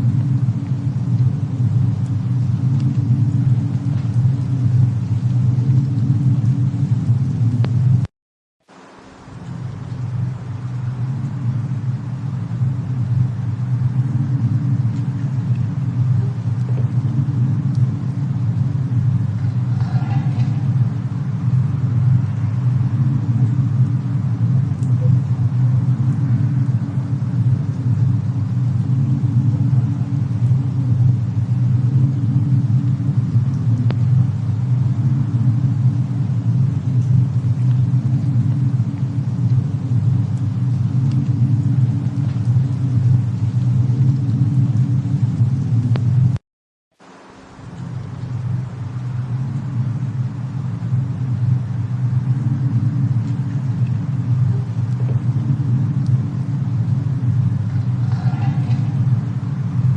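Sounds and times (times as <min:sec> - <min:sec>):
deep steady rumble: 0:00.0 - 0:46.4, 0:47.0 - 0:59.9
faint clicks: 0:24.8 - 0:25.2.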